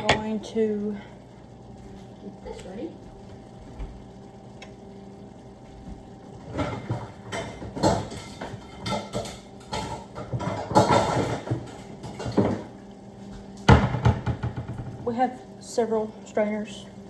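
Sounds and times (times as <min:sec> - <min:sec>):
cookware clattering: 0:06.5 - 0:12.7.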